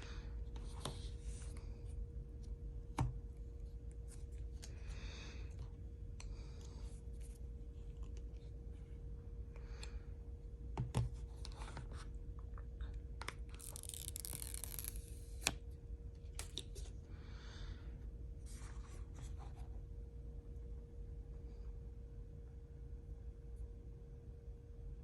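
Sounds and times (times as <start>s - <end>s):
packaging tearing and rustling: 13.5s - 15.5s.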